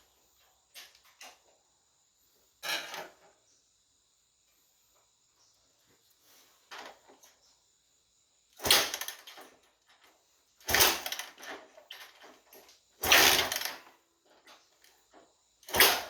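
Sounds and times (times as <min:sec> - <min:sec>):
motorcycle engine kick-start attempts: 0:08.6 - 0:09.6, 0:10.6 - 0:14.6, 0:15.6 - 0:16.0.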